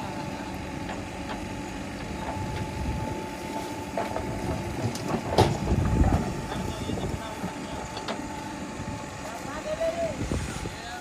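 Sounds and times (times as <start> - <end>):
backhoe engine running: 0.0 - 11.0
metallic clanks and knocks: 3.5 - 6.3.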